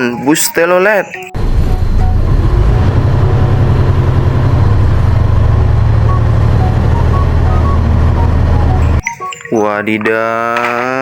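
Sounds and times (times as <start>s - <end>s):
bus engine idling: 1.4s - 9.0s.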